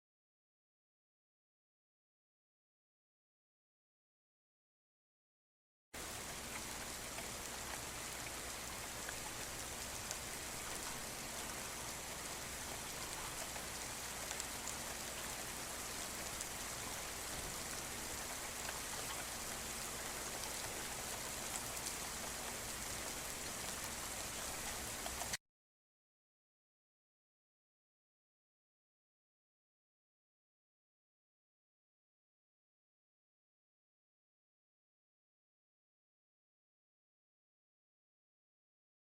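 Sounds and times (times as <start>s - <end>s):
steady rainfall: 6.0s - 25.4s.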